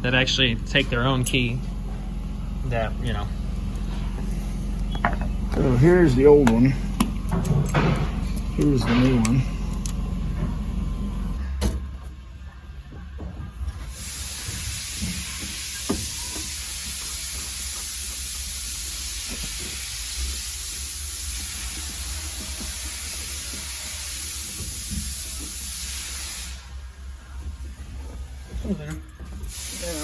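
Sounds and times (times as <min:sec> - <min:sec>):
low hum: 0:00.0 - 0:11.7
handling clicks and knocks: 0:06.4 - 0:10.7
steady hiss: 0:29.4 - 0:30.0.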